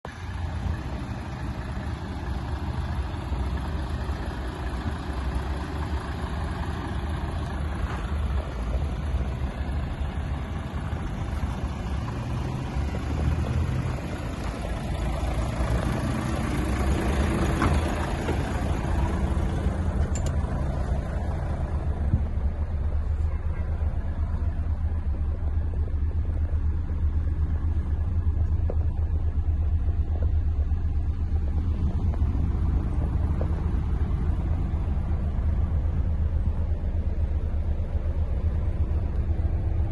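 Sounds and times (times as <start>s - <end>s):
truck diesel engine idling: 0.0s - 39.9s.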